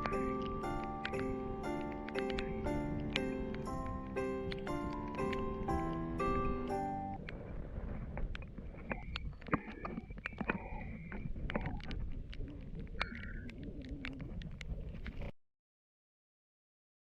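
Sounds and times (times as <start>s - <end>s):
sharp clicks: 0.0s - 6.1s
wind rumbling on microphone: 0.0s - 15.3s.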